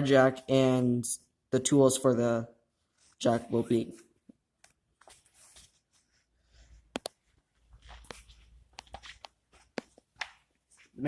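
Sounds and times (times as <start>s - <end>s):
soft rustling handling noise: 2.7s - 11.0s.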